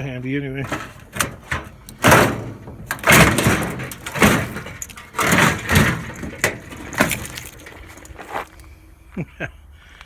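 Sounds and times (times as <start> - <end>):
hand tools clanking on sheet metal: 0.6 - 8.4.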